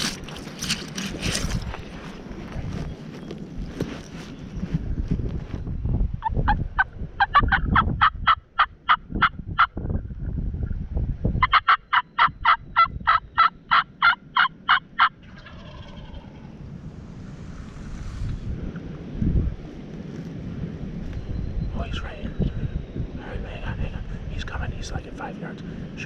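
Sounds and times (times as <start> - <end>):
turkeys yelping: 6.2 - 9.7, 11.4 - 16.6.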